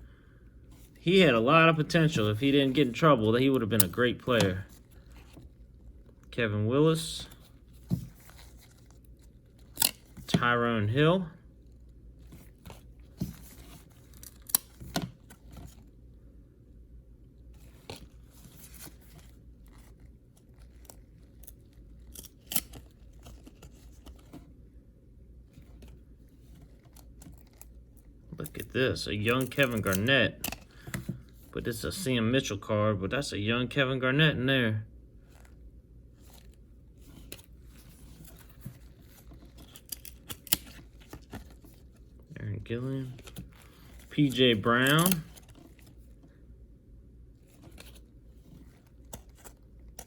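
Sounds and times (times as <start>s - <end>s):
cardboard cards rustling and ticking: 0.8s - 6.3s, 7.0s - 16.0s, 17.6s - 24.5s, 25.5s - 32.1s, 36.2s - 46.4s, 47.4s - 50.0s
trading cards being flipped: 42.9s - 46.2s.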